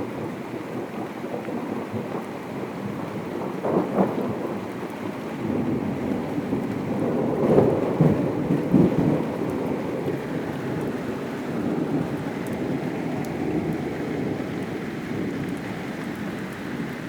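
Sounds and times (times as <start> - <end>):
heavy rain falling: 0.0 - 17.0
thunder rumble: 5.4 - 15.6.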